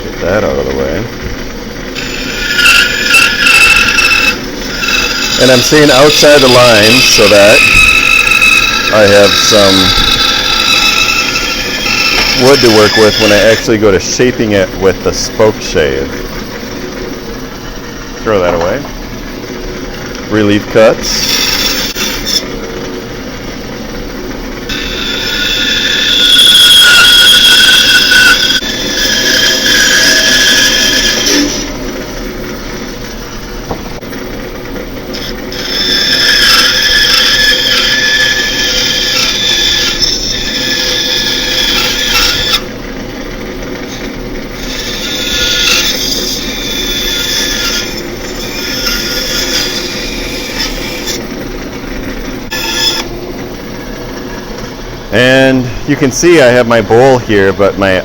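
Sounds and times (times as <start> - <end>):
bandsaw motor hum: 0.0 - 58.0
bandsaw blade cutting wood: 2.0 - 14.2, 20.3 - 22.5, 24.7 - 31.8, 35.1 - 42.7, 43.8 - 51.2, 52.5 - 53.1.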